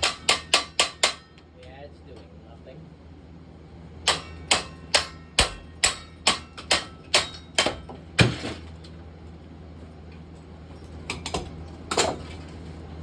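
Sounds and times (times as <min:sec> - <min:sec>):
tool hammering on ceiling fan: 0:00.0 - 0:01.5, 0:04.0 - 0:08.0.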